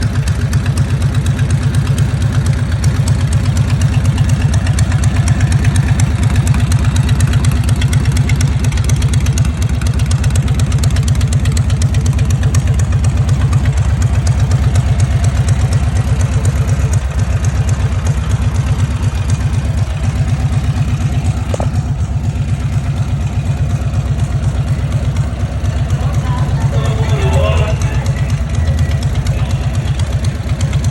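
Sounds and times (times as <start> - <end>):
motorcycle engine idling: 0.0 - 30.9.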